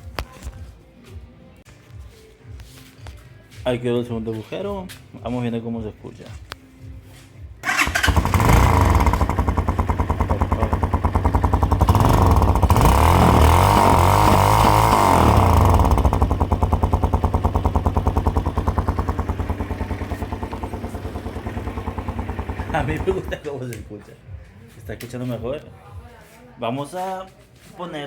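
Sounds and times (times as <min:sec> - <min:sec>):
motorcycle engine revving: 0:07.6 - 0:23.5
motorcycle engine starting and idling: 0:07.6 - 0:23.7.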